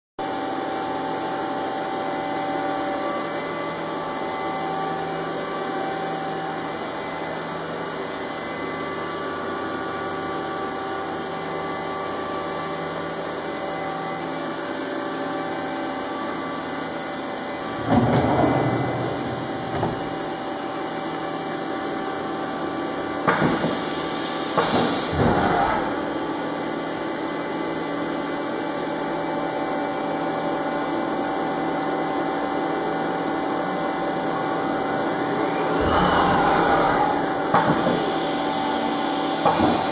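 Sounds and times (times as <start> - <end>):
high steady machine whines: 0.2 - 39.9
lathe machine hum: 16.2 - 21.0, 33.6 - 39.6.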